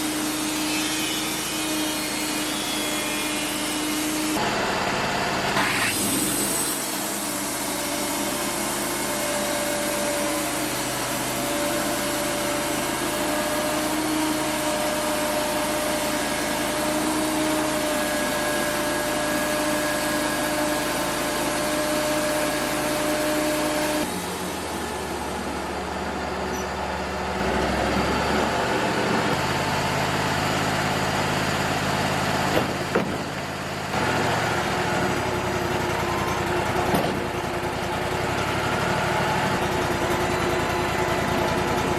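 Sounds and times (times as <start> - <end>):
band sawmill running: 0.0 - 41.9
sharp knocks: 32.5 - 33.4.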